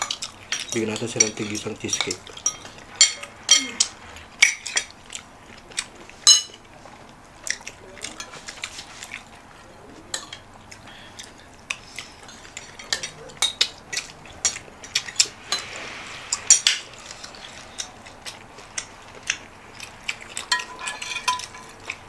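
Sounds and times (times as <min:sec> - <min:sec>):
cutlery clinking on dishes: 0:00.0 - 0:04.9, 0:05.8 - 0:06.7, 0:10.0 - 0:10.5, 0:11.7 - 0:22.0.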